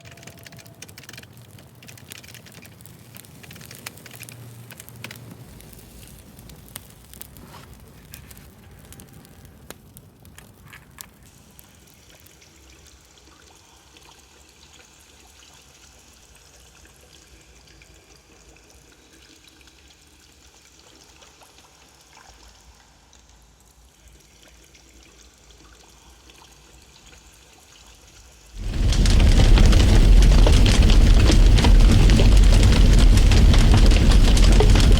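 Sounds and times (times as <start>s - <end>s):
small ticks and clicks: 0.0s - 13.6s, 28.6s - 34.9s.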